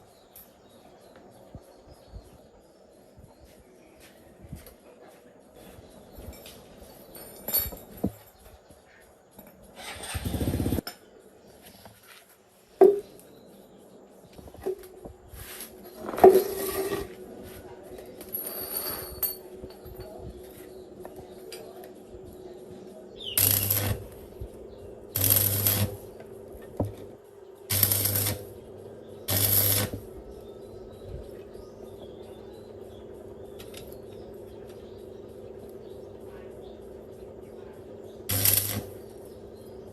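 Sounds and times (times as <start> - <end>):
low welder hum: 9.7 - 10.9, 14.3 - 39.9
electric welder crackling: 9.9 - 10.8, 23.2 - 30.5, 38.1 - 39.6.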